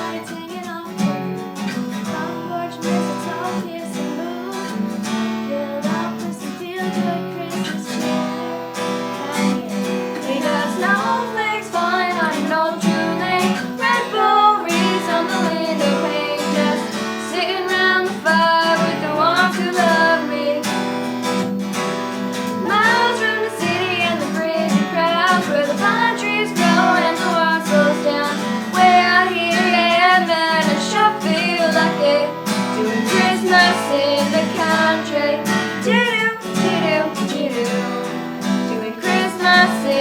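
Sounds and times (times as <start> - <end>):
girls singing: 0.0 - 40.0
strummed acoustic guitar: 0.0 - 40.0.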